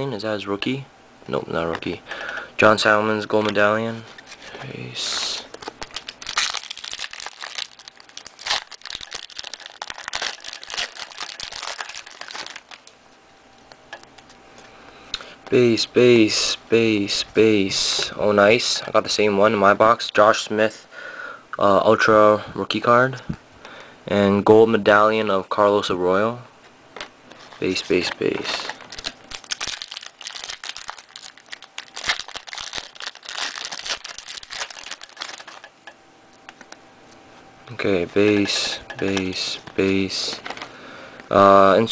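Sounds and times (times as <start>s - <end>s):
card wrappers crinkling and rustling: 3.2s - 14.7s, 27.0s - 35.8s, 37.8s - 41.4s.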